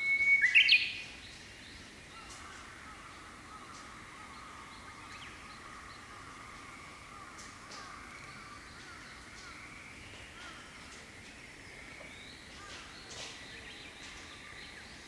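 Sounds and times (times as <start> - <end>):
bush warbler singing: 0.0 - 2.3
distant bird calls: 0.0 - 15.0.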